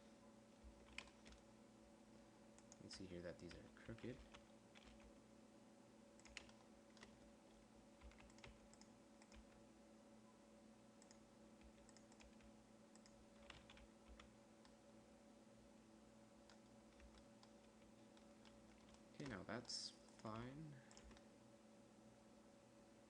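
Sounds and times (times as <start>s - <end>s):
low electrical hum: 0.0s - 23.0s
keyboard and mouse clicks: 0.7s - 1.4s, 6.2s - 9.6s, 11.0s - 14.8s, 16.4s - 21.3s.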